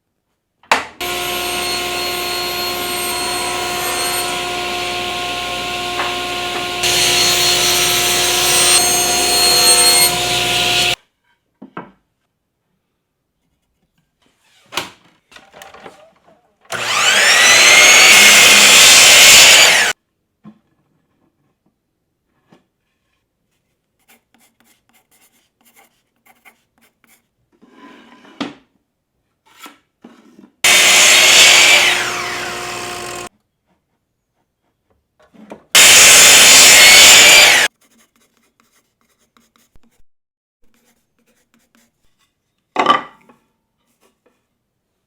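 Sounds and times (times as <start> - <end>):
power tool cutting wood: 1.0 - 11.0, 16.7 - 20.0, 30.7 - 33.3, 35.8 - 37.7.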